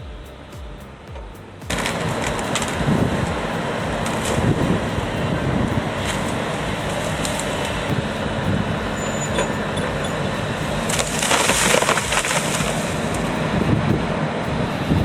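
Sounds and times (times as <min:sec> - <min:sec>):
heavy machinery running: 0:00.0 - 0:15.0
wood cracking and crushing: 0:10.7 - 0:13.3.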